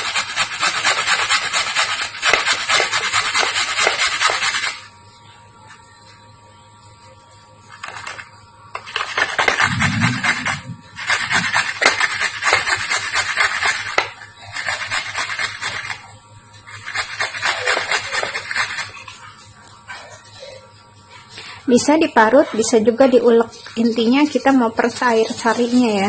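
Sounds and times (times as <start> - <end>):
root grated on hand grater: 0.0 - 4.8, 8.8 - 16.1, 16.7 - 19.1, 25.1 - 26.0.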